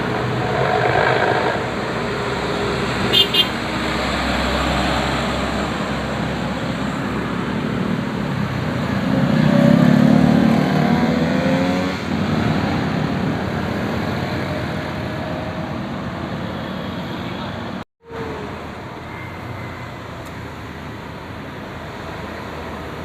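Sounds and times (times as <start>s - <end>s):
vehicle engine passing: 0.0s - 13.0s
roadside traffic noise: 0.0s - 23.0s.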